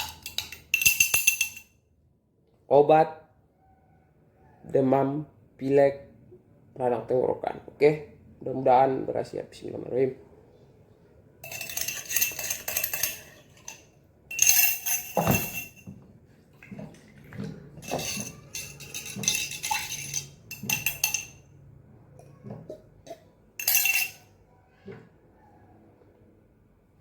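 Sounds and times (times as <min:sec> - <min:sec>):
spoon clinking against glass: 0:00.0 - 0:01.7, 0:11.4 - 0:15.9, 0:17.8 - 0:21.5, 0:23.1 - 0:24.3.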